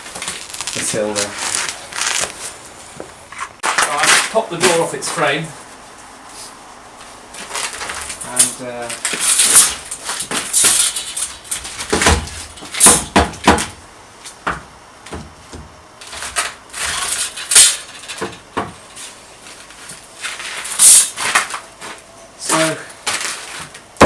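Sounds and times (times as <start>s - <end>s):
rustling: 0.0s - 13.0s, 15.4s - 24.0s
wooden door knocking and scraping: 14.4s - 15.8s.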